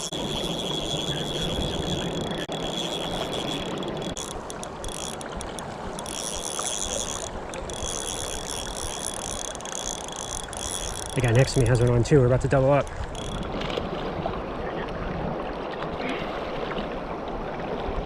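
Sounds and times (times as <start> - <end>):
fishing reel clicking: 0.0 - 12.2, 12.8 - 13.5.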